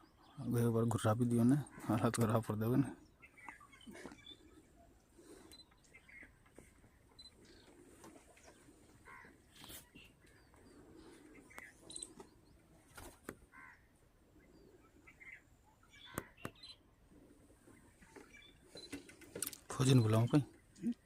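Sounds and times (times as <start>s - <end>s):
faint short bird calls: 3.2s - 16.8s.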